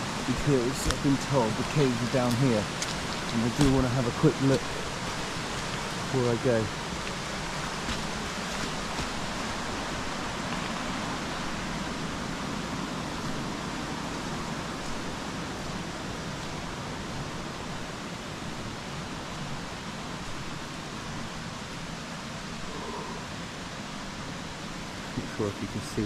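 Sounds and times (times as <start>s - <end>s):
stream rushing: 0.0s - 26.0s.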